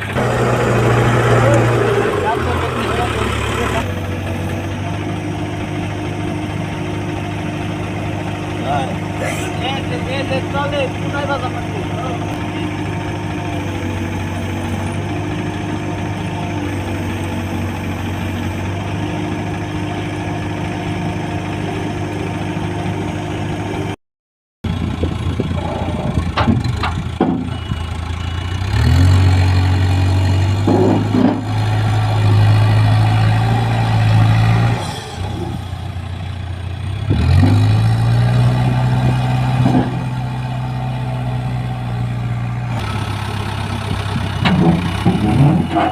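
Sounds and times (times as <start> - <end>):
heavy diesel engine revving: 0.0 - 24.0, 24.7 - 45.9
metal knocks of digging machinery: 25.4 - 27.8, 30.5 - 31.6, 39.4 - 40.2, 43.7 - 45.9.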